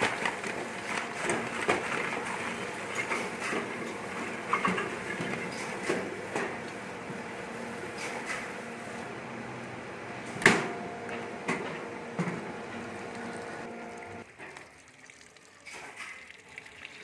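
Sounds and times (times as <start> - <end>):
machine humming: 8.6 - 14.2.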